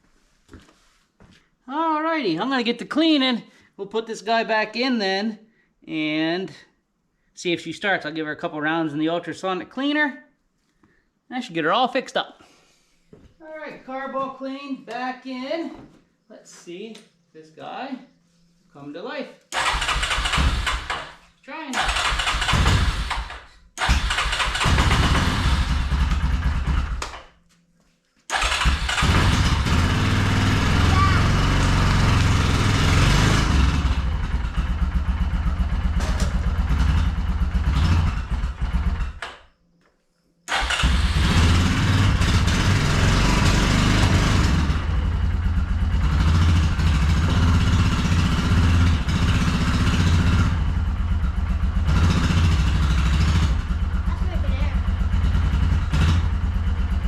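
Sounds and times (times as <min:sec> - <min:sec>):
atv engine running: 0:28.4 - 0:39.2, 0:40.7 - 0:57.0.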